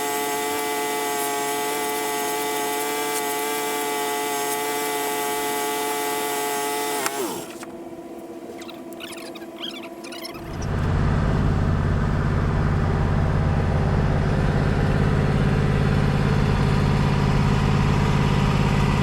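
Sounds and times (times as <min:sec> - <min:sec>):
bandsaw sawmill running: 0:00.0 - 0:07.8.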